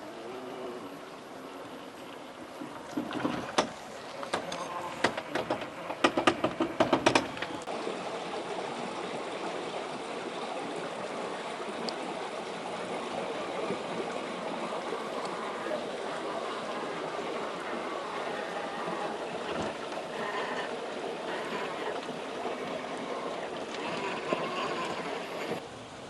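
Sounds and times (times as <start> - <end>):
sharp clacks and knocks: 2.6 - 7.6.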